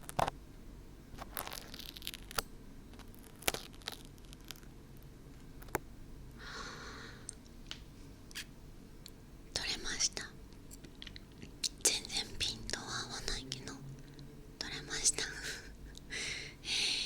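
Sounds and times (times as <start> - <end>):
dried glue crackling and tearing: 1.2 - 4.7.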